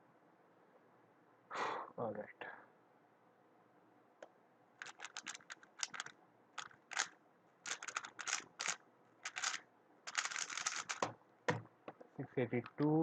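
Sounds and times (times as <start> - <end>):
speedcube clicking: 4.8 - 11.1.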